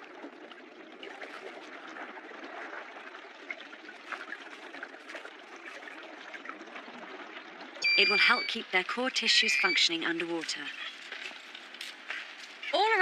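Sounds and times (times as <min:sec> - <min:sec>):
faint crackles: 0:00.0 - 0:13.0
sea water washing and trickling: 0:00.0 - 0:13.0.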